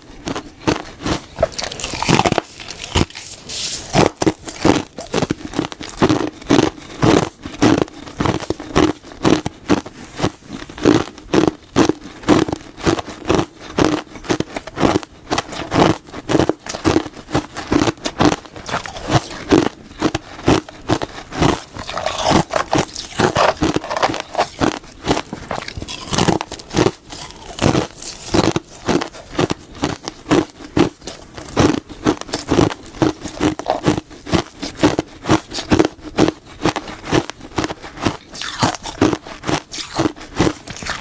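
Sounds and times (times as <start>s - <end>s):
biting and crunching: 0.0s - 41.0s.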